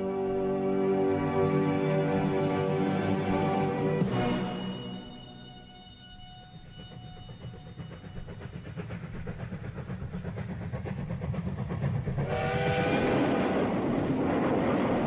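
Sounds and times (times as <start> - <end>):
train whistle: 0.0 - 8.2, 12.2 - 13.7
train chugging: 0.0 - 15.0.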